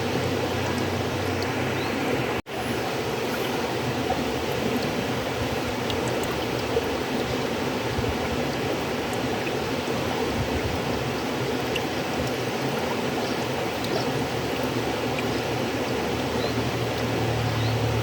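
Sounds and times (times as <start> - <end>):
faint water splashes: 0.0 - 18.0
stream water rushing: 0.0 - 18.0.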